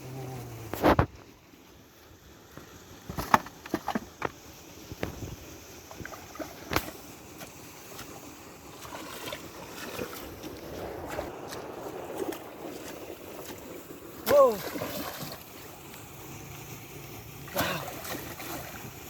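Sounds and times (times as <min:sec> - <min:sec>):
water rushing: 0:00.0 - 0:19.0
sharp splashes in water: 0:05.9 - 0:19.0.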